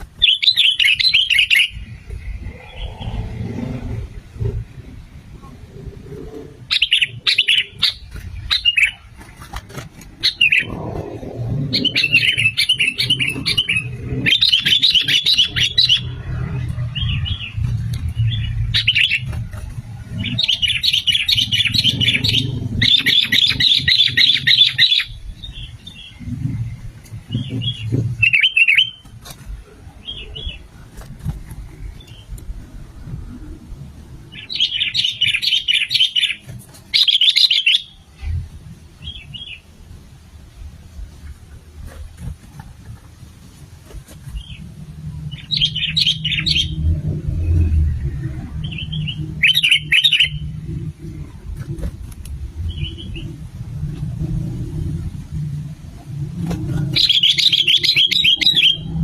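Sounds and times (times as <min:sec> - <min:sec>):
low rumbling background: 0:00.0 - 0:36.6, 0:37.9 - 0:59.0
bird chattering chirps: 0:00.2 - 0:03.1, 0:06.7 - 0:09.0, 0:10.2 - 0:10.9, 0:11.8 - 0:16.2, 0:18.2 - 0:19.3, 0:20.1 - 0:26.2, 0:45.4 - 0:46.8, 0:48.6 - 0:50.5, 0:56.9 - 0:59.0.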